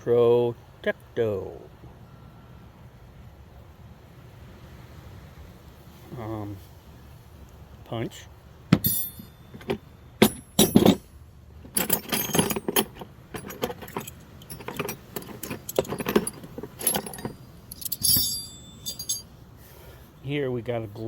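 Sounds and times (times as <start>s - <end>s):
steel punches clinking and rattling: 8.8s - 19.3s.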